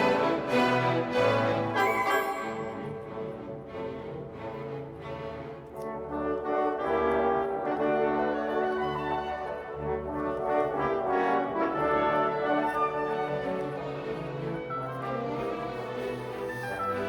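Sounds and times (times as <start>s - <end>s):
gentle instrumental music: 0.0s - 11.8s.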